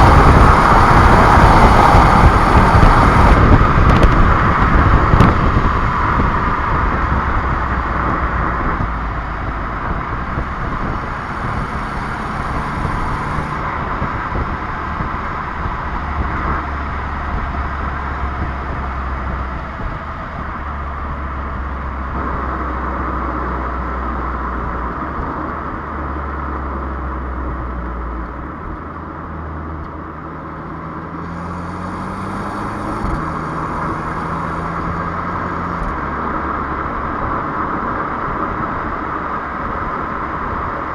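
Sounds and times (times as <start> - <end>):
car engine running: 0.0 - 40.9
road noise: 0.0 - 40.9.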